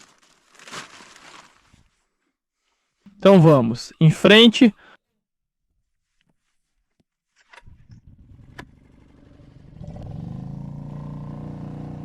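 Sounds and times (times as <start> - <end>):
engine humming: 7.6 - 12.0.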